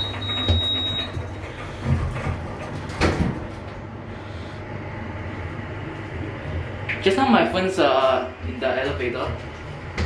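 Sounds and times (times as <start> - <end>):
lift doors sliding and knocking: 0.0 - 3.7.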